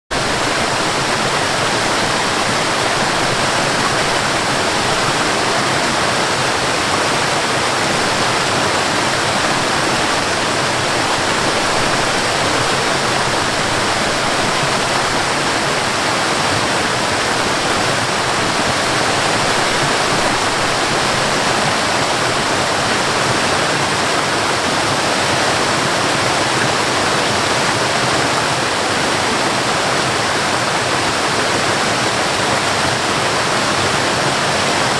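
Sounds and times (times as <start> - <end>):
waterfall roaring: 0.1 - 34.9.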